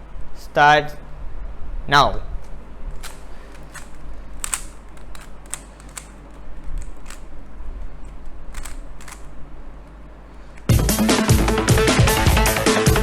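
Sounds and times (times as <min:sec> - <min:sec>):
rubik's cube clicking: 0:02.4 - 0:10.7.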